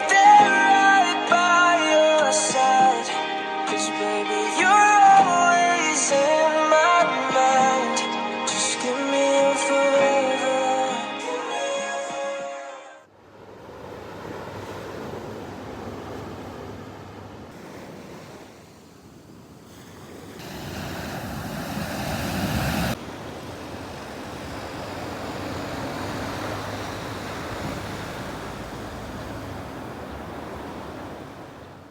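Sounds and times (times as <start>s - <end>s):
sea waves breaking on shore: 13.1s - 31.9s.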